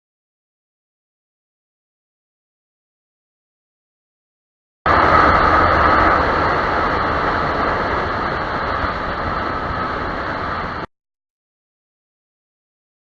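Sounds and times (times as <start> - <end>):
faint whine: 4.9 - 10.9
vehicle road noise rushing: 4.9 - 10.9.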